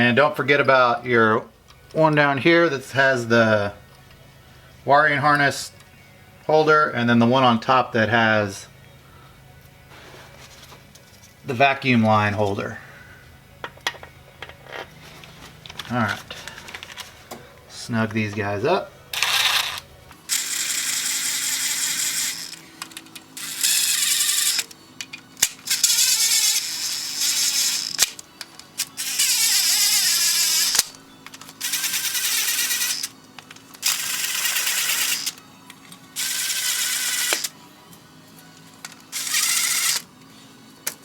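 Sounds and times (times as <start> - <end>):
cordless power driver bursts: 36.2 - 37.5, 39.2 - 40.0.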